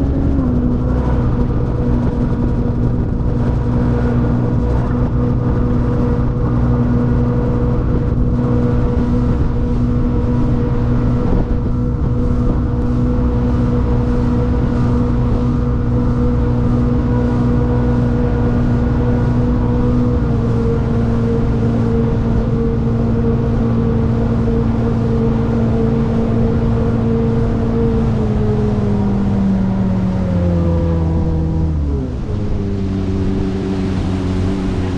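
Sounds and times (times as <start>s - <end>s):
boat engines droning: 0.0s - 34.9s
water rushing past hull: 0.0s - 34.9s.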